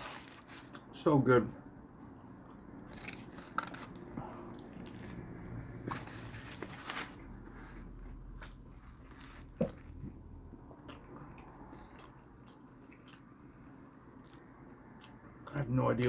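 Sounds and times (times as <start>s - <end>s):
moist chewing: 10.7s - 15.2s.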